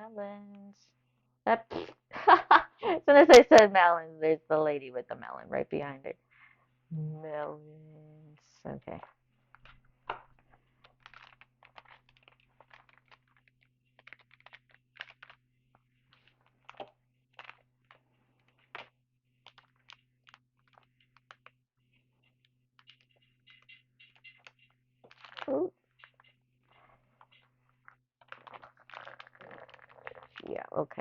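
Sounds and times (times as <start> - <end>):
trading cards rustling and clicking: 9.5 - 30.5.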